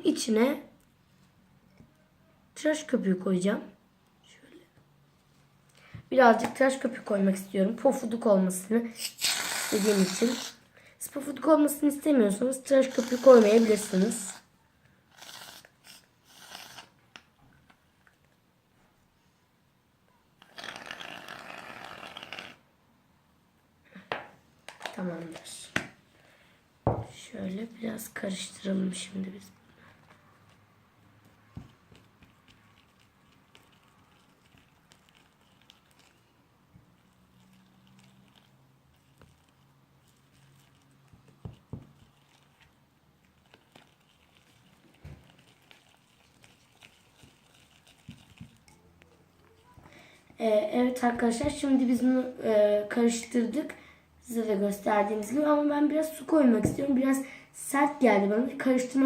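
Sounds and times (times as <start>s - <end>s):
aerosol can hissing: 9.0s - 10.6s
toy knife stirring slime: 9.0s - 10.6s, 12.7s - 14.4s, 15.1s - 17.2s, 30.4s - 49.8s.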